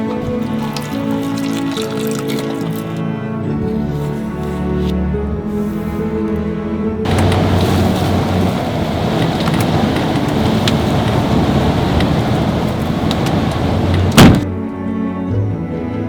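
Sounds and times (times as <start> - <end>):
wind-driven precipitation: 7.1 - 14.5
loud sharp bang: 14.0 - 14.5.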